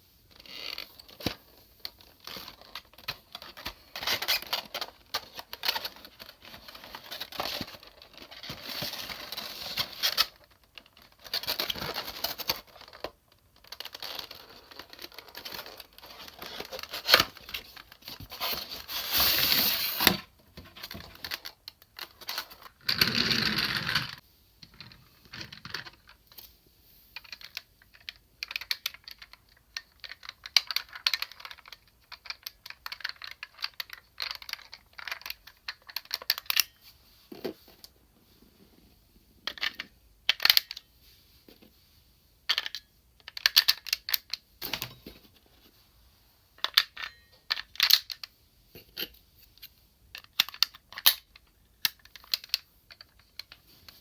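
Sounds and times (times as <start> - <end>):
plastic toy parts clicking and rattling: 0.4 - 20.0, 27.2 - 36.8, 39.4 - 40.8, 42.5 - 44.4, 46.6 - 48.3, 49.6 - 53.6.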